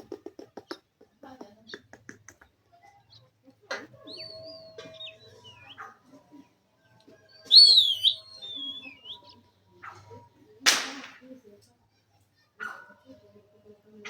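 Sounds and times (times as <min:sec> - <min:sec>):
parakeet whistling swooping notes: 0:07.5 - 0:09.3.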